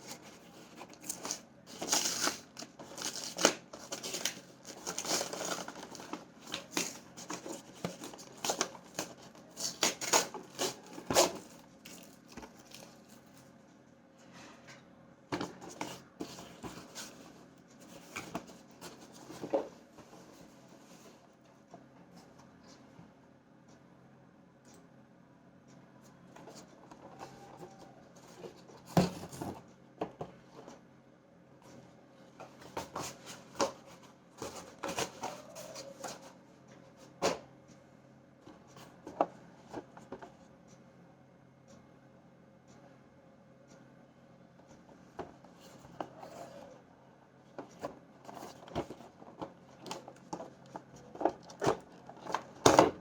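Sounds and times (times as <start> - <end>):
packaging rustling and clicks: 0.0 - 13.4.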